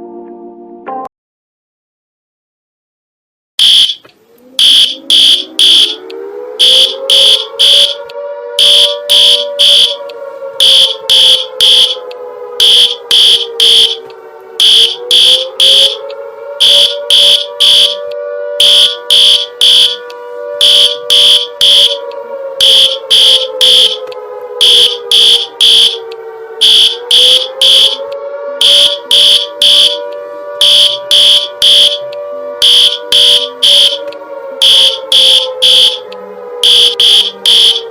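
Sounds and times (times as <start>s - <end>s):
high-pitched electronic beeps: 3.6s - 6.0s, 6.6s - 8.0s, 8.6s - 10.0s, 10.6s - 14.0s, 14.6s - 18.0s, 18.6s - 20.0s, 20.6s - 22.0s, 22.6s - 26.0s, 26.6s - 28.0s, 28.6s - 30.0s, 30.6s - 32.0s, 32.6s - 34.0s, 34.6s - 36.0s, 36.6s - 37.9s
low wailing siren: 3.6s - 37.9s.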